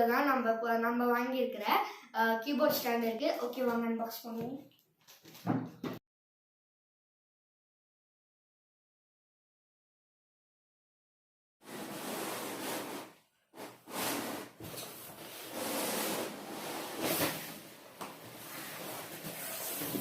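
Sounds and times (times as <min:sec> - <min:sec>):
rubbing and scraping handling noise: 0:11.6 - 0:20.0.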